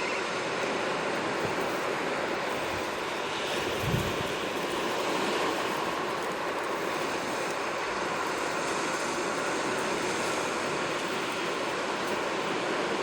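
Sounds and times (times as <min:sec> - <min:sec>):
sea waves washing on shore: 0:00.0 - 0:13.0.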